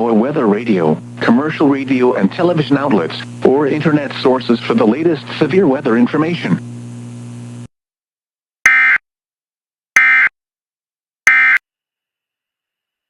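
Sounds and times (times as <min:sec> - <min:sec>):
low radio hum: 0:00.0 - 0:07.7.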